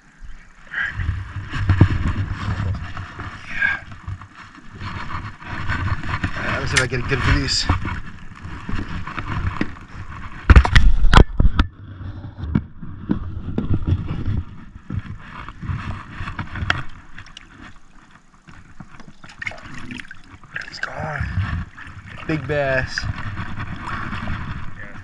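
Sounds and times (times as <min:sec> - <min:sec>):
knocks and thumps on boat: 0:01.0 - 0:25.0
water splashing: 0:16.4 - 0:25.0.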